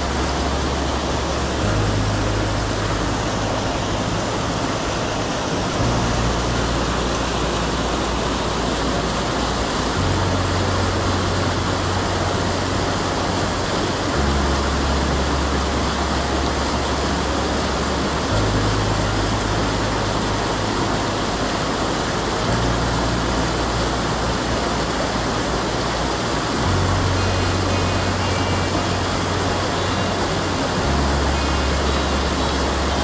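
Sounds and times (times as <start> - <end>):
low rumble: 0.0 - 33.0
stream water rushing: 0.0 - 33.0.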